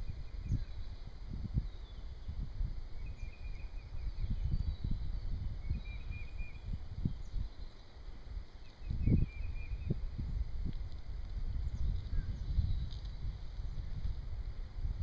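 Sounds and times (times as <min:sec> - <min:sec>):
faint bird chirps: 0:00.0 - 0:10.4, 0:11.6 - 0:13.8.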